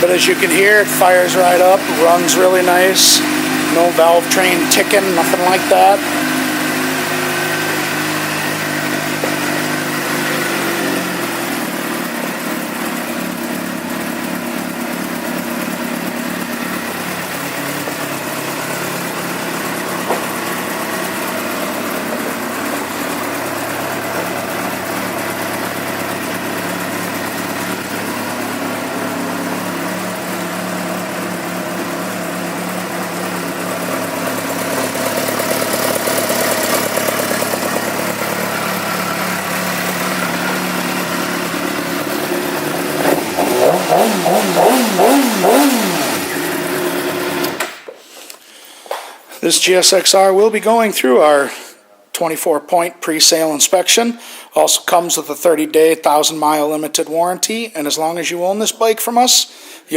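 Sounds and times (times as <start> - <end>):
motorcycle engine idling: 0.0 - 47.9.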